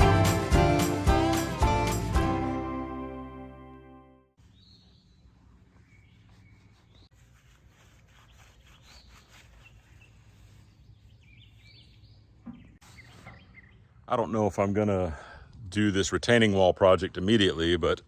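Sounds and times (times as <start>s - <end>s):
bird chirps: 4.4s - 7.1s, 8.2s - 14.0s.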